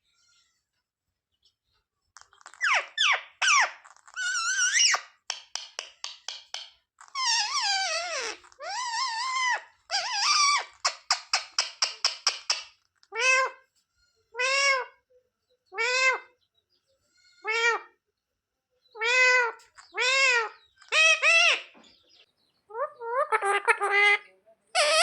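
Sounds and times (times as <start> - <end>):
parrot calling: 2.4 - 6.2, 7.0 - 13.6, 14.3 - 15.0, 15.7 - 16.3, 17.4 - 17.9, 19.0 - 21.8, 22.7 - 25.0.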